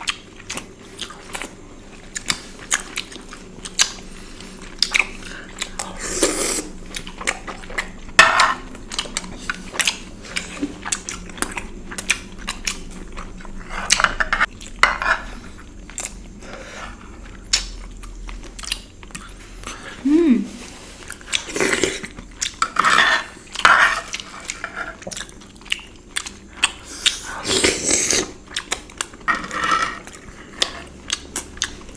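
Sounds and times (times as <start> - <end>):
chewing: 0.0 - 14.8, 15.4 - 20.0, 20.6 - 31.9.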